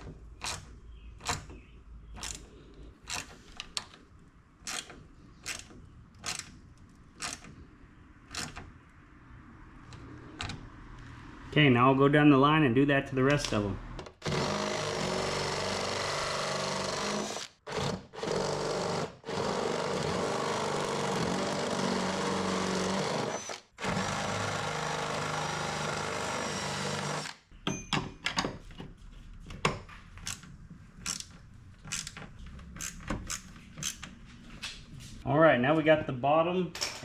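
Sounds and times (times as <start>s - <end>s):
cordless power drill running: 14.2s - 27.4s
clicks and knocks of hardware: 36.8s - 37.0s.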